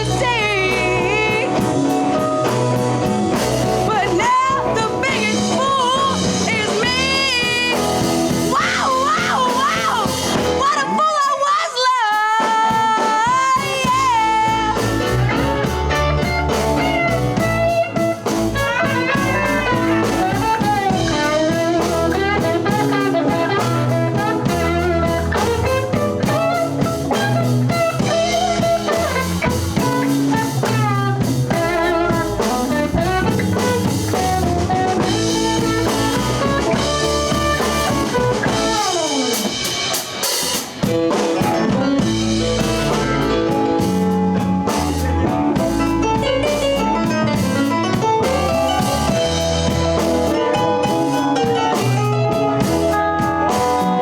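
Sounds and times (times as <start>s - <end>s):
blues band playing: 0.0s - 54.0s
bent wavering lead notes: 14.0s - 39.7s.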